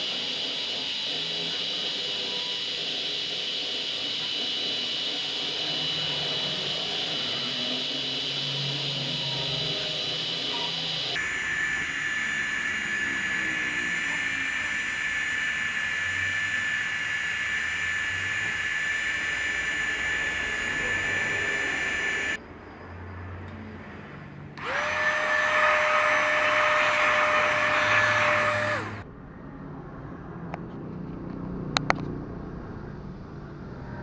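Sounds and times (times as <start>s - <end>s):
spindle motor high whine: 0.0s - 22.4s, 24.6s - 29.1s.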